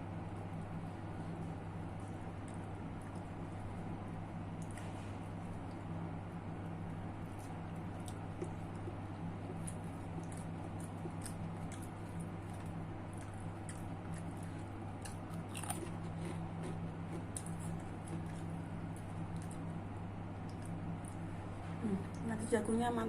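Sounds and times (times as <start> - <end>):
steady low hum: 0.0 - 23.0
person chewing food: 6.6 - 21.5.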